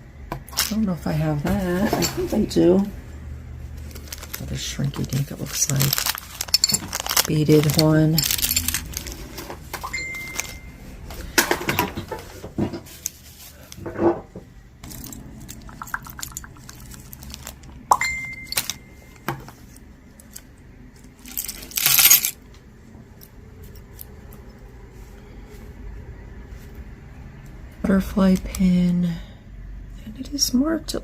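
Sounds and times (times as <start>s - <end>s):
jewelry clinking and jangling: 3.8s - 10.8s, 14.8s - 19.2s, 20.2s - 22.4s
jewelry rattling rush: 3.9s - 9.5s, 14.8s - 17.7s, 21.2s - 22.4s.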